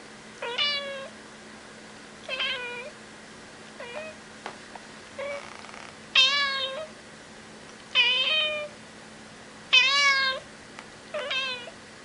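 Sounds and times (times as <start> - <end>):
cat meowing: 0.4 - 1.1, 2.3 - 2.9, 3.8 - 4.2, 5.2 - 6.9, 8.0 - 8.7, 9.7 - 10.4, 11.1 - 11.8.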